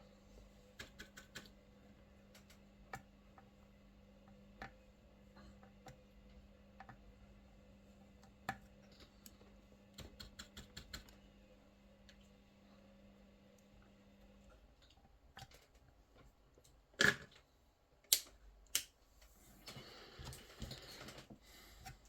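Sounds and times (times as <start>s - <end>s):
faint clicking and tapping: 0.3s - 11.3s, 17.4s - 22.0s.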